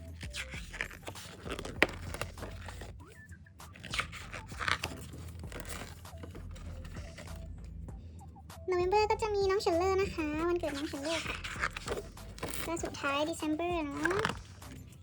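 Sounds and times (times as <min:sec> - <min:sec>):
paper rustling: 0:00.0 - 0:07.6, 0:10.0 - 0:15.0.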